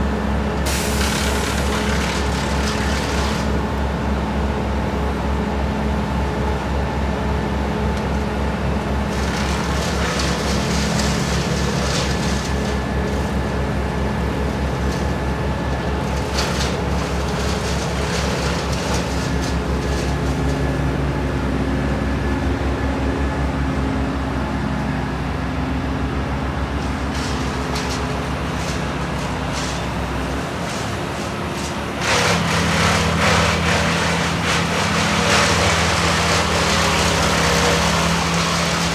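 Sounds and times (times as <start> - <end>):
loud rough noise: 0.7 - 3.8, 9.0 - 21.0, 26.2 - 38.9.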